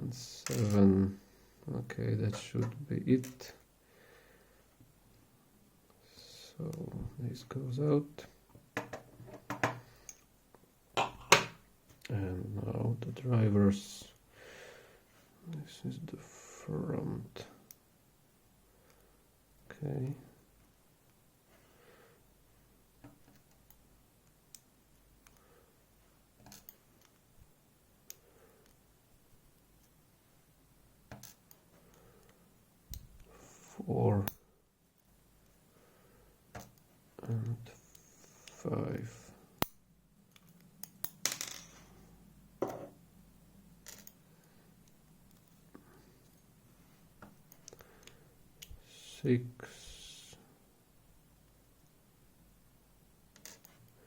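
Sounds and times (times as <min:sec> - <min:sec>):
faint clicks of lock parts: 0:08.5 - 0:10.6, 0:23.0 - 0:25.5, 0:26.4 - 0:27.3, 0:28.0 - 0:28.8, 0:39.6 - 0:42.0, 0:43.8 - 0:46.5, 0:47.2 - 0:48.8, 0:53.3 - 0:54.0.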